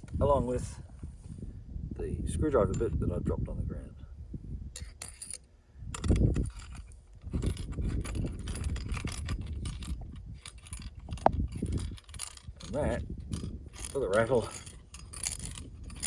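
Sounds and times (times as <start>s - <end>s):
metal tool pieces rattling: 4.8s - 16.0s.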